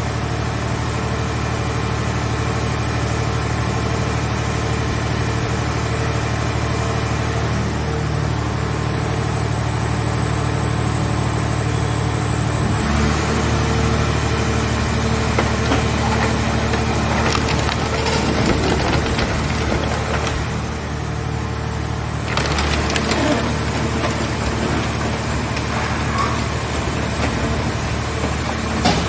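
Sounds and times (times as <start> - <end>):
baler power unit humming: 14.0 - 29.0.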